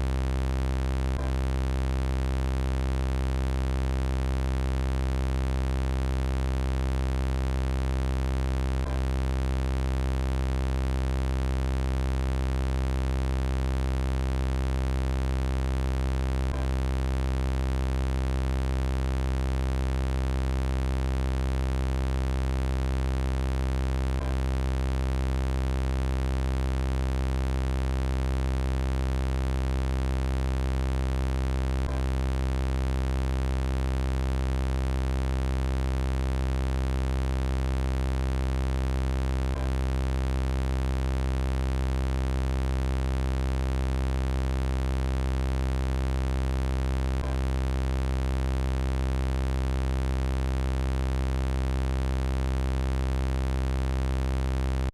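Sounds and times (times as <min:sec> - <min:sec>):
faint loop click: 0:01.1 - 0:01.6, 0:47.1 - 0:47.6.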